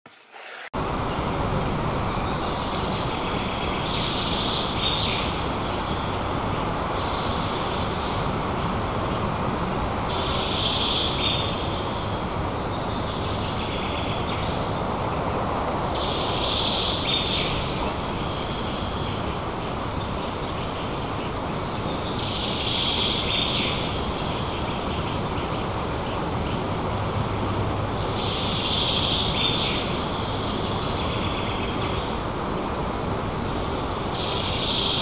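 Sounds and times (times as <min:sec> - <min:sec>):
steady rushing outdoor noise: 0:00.0 - 0:35.0
songbird singing: 0:02.5 - 0:09.0, 0:15.4 - 0:26.6, 0:27.6 - 0:32.3, 0:33.4 - 0:35.0.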